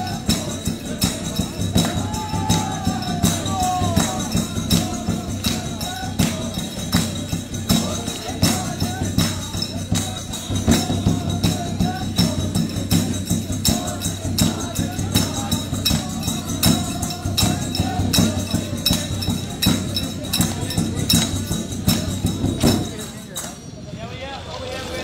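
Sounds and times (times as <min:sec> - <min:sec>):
jingling tambourine-like beat: 0:00.0 - 0:23.8.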